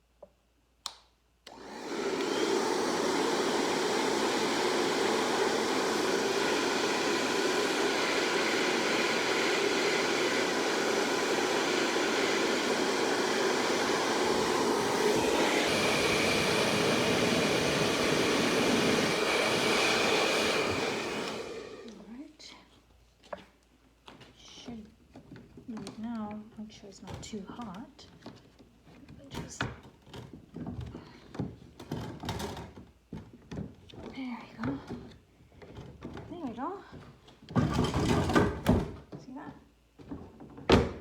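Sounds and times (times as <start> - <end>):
hair dryer running: 1.5 - 22.2.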